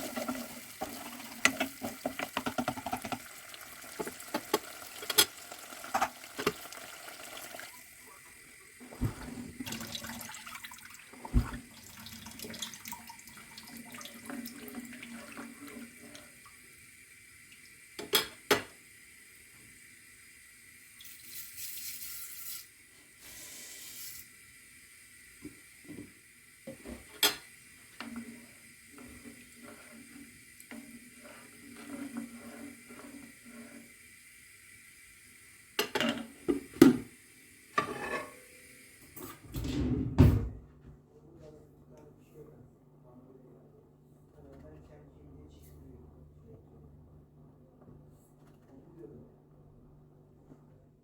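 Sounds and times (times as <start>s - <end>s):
water tap running: 0.0s - 39.2s
dishes and utensils clinking: 37.8s - 38.4s.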